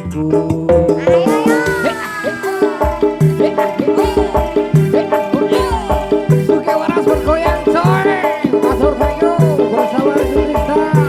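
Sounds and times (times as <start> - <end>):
bass: 0.0 - 2.0
driving drum beat: 0.0 - 11.0
lead melody with bending notes: 0.0 - 11.0.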